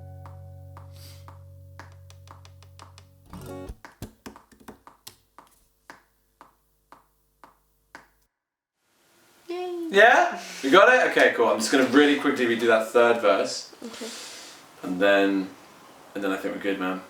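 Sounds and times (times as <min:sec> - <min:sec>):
guitar chord ringing: 0:00.0 - 0:02.3.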